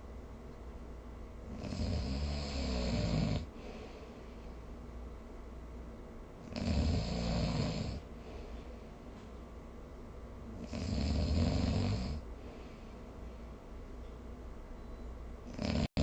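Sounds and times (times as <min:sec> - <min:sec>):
person snoring: 0:01.5 - 0:03.5, 0:06.4 - 0:08.1, 0:10.6 - 0:12.2, 0:15.5 - 0:16.0.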